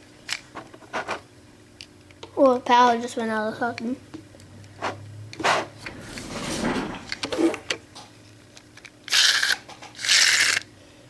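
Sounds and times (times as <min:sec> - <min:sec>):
handling noise: 0:05.4 - 0:07.8.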